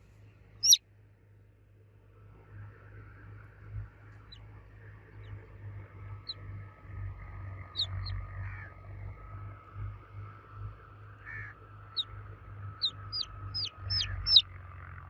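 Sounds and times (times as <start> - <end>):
steady low rumble: 3.5 - 14.9
baby chicks cheeping: 7.6 - 8.3, 12.7 - 14.4.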